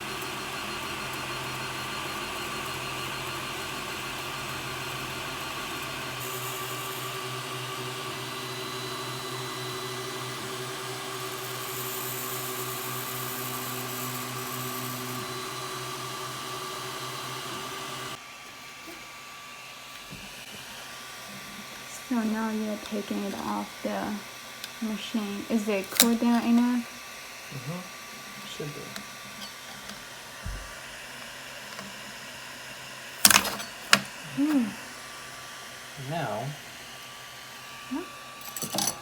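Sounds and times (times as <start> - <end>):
printer motors whining: 0.0 - 32.6
fan hiss: 19.8 - 38.5.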